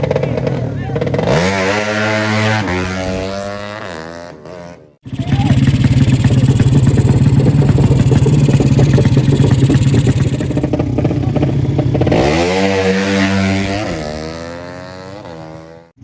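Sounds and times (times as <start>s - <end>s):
motorcycle engine revving: 0.0s - 16.0s.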